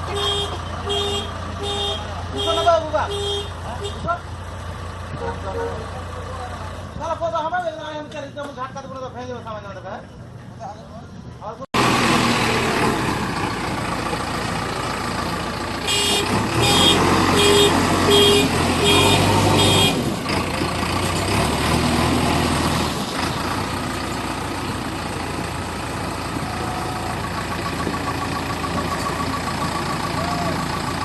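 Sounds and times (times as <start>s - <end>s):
heavy diesel engines under load: 0.0s - 31.0s
vehicle horn short toots: 0.1s - 4.1s, 15.8s - 20.0s.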